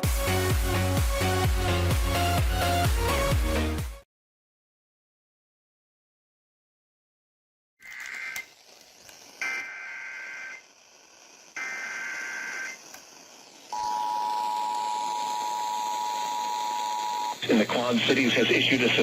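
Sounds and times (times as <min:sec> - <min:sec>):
buzzing two-tone data bursts: 0:09.4 - 0:10.8, 0:11.5 - 0:19.0
faint radio hiss: 0:10.5 - 0:19.0
steady two-tone attention signal: 0:13.7 - 0:17.4.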